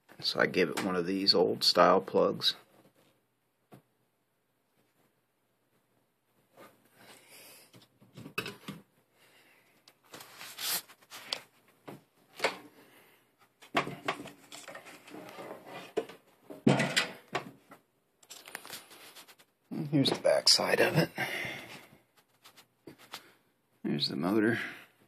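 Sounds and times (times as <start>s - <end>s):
box fan being handled: 13.6s - 17.7s.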